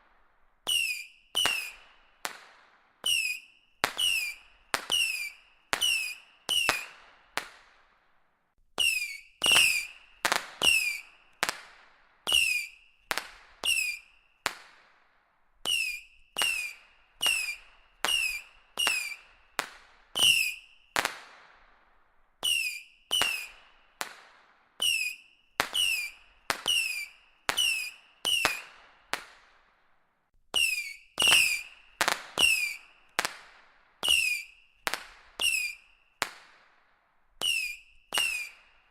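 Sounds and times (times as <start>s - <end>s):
whistling firework rockets: 0.0s - 8.1s, 8.8s - 15.0s, 15.6s - 29.8s, 30.5s - 38.9s.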